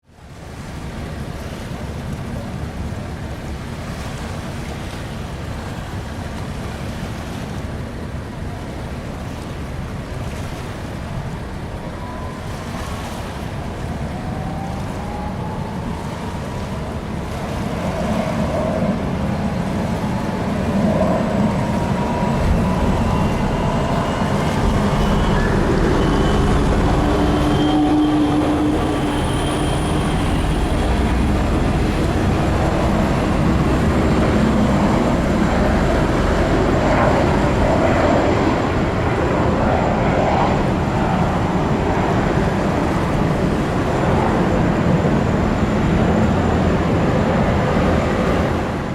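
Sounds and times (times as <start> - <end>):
high turbine whine: 9.7 - 48.9
gas turbines roaring: 13.6 - 48.9.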